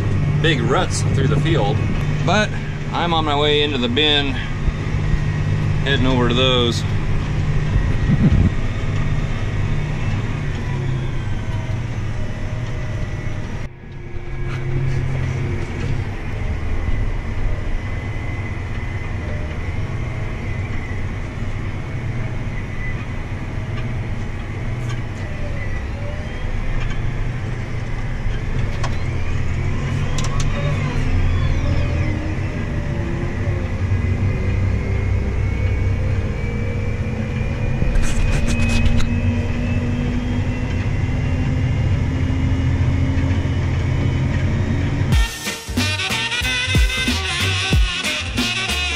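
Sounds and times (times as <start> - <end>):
tractor engine running under load: 0.0 - 45.3.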